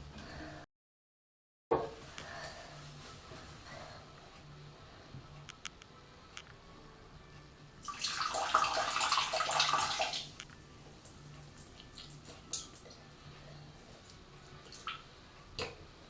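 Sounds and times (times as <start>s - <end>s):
water running from tap: 7.8s - 15.1s.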